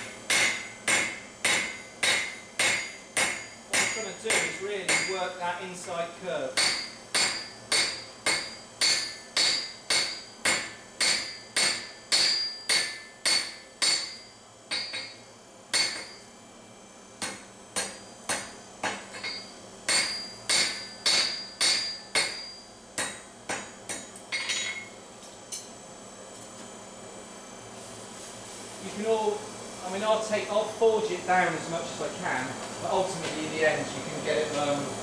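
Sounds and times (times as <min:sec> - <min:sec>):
hammer striking steel on anvil: 0:00.0 - 0:06.0, 0:06.6 - 0:16.3, 0:17.2 - 0:25.7.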